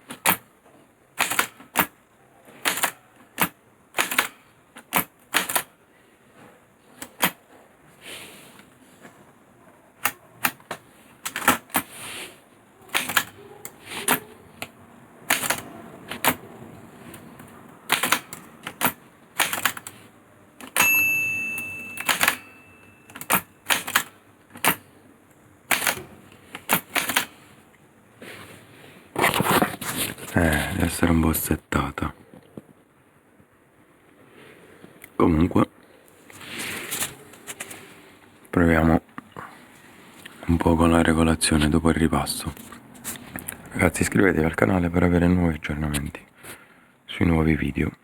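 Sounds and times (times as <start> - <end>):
typewriter key clacks: 1.2 - 1.9, 2.6 - 5.7, 12.9 - 13.4, 15.3 - 16.4, 17.9 - 19.9, 21.9 - 24.8, 25.7 - 27.3
typewriter margin bell ringing: 20.7 - 24.0.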